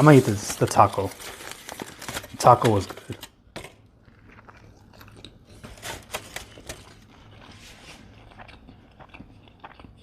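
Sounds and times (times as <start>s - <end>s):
food handling rustles and taps: 0.0s - 3.8s, 5.6s - 7.8s
chewing with mouth clicks: 4.0s - 5.6s, 6.9s - 10.0s.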